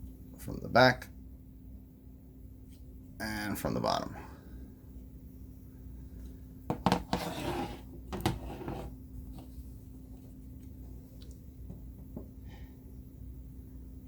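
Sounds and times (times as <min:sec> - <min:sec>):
faint steady hum: 0:00.0 - 0:14.0
plastic toy scraping: 0:06.8 - 0:08.9.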